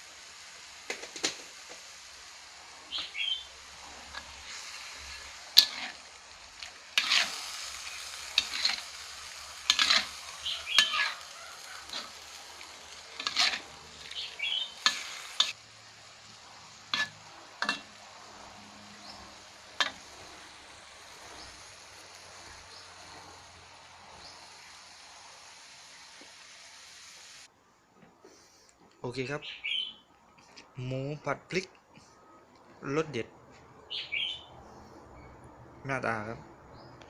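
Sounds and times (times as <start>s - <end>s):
meat sizzling in a pan: 0.0s - 27.5s.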